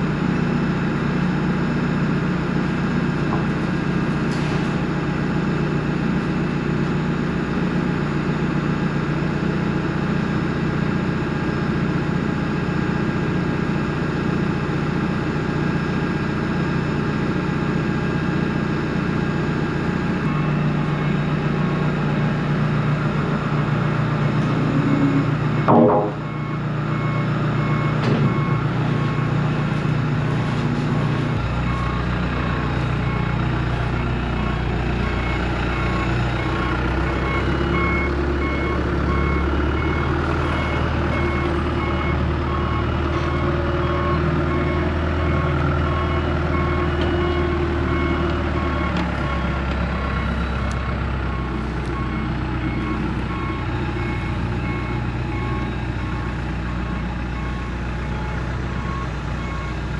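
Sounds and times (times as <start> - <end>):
heavy machine engine running: 0.0 - 59.9
reverse alarm beeping: 20.2 - 30.4, 31.3 - 59.9.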